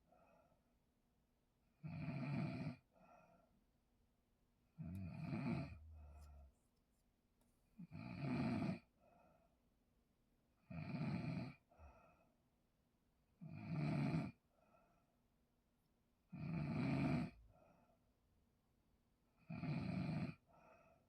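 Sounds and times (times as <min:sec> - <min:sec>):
faint breath out: 0:02.9 - 0:03.6, 0:20.5 - 0:21.0
person snoring heavily: 0:04.8 - 0:05.8, 0:19.5 - 0:20.4.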